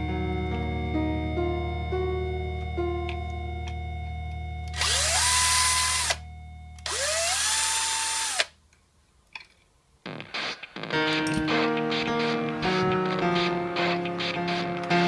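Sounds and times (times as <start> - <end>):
rotary hammer motor whine: 4.7 - 8.5.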